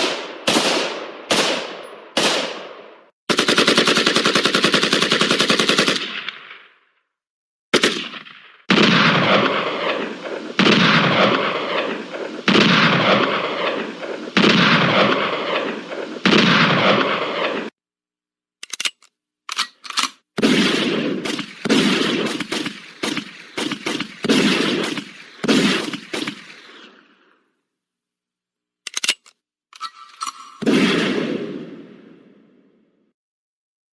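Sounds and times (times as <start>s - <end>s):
single gunshots: 0.0s - 3.1s
gunfire bursts: 0.0s - 6.7s, 7.7s - 17.7s, 20.4s - 26.9s, 30.5s - 32.2s.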